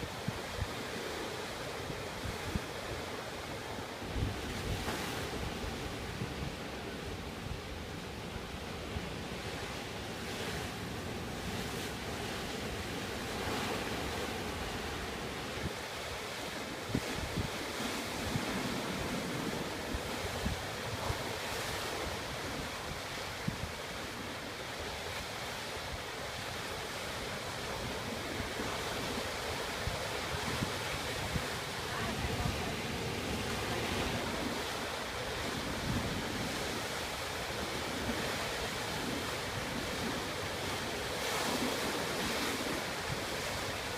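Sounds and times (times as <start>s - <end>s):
sea waves breaking: 0.0s - 43.9s
wind buffeting microphone: 13.3s - 25.0s.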